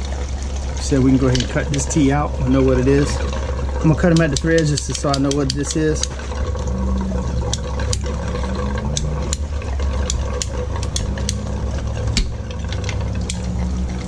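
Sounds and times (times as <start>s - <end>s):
reciprocating saw cutting pipe: 2.8s - 14.0s.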